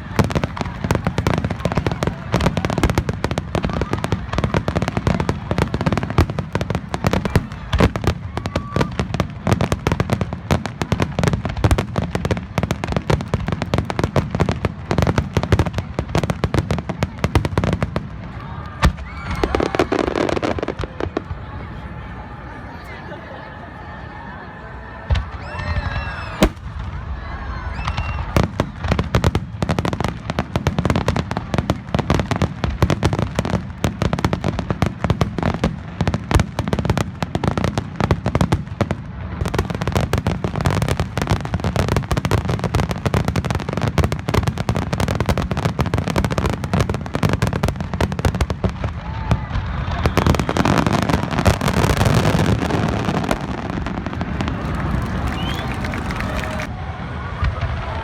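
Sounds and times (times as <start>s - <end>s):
firework bangs: 0.0s - 21.6s, 25.0s - 58.0s
firework crackling shower: 0.0s - 21.6s, 25.1s - 58.0s
firework whistles rising: 25.1s - 28.6s, 49.5s - 56.8s.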